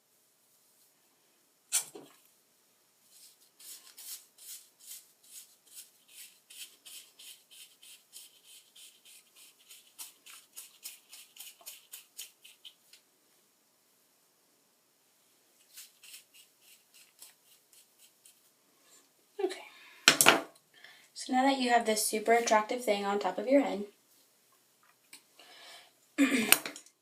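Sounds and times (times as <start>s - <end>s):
comb scratching through hair: 3.1s - 12.8s, 15.6s - 18.5s.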